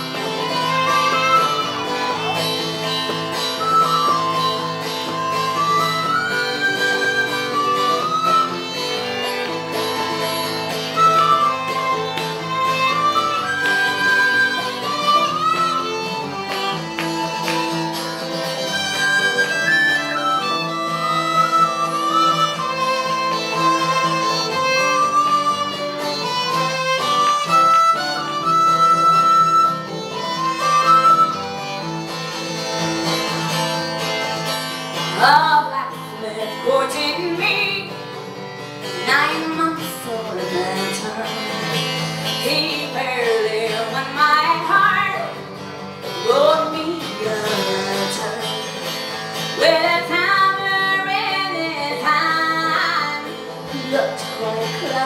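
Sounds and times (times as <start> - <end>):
wind instrument melody: 0.0 - 34.5
acoustic guitar: 0.0 - 55.0
fiddle: 0.0 - 55.0.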